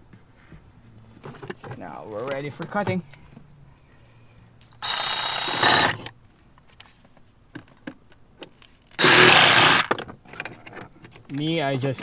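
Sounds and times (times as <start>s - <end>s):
power tool cutting plastic: 4.8s - 6.1s, 9.0s - 10.0s.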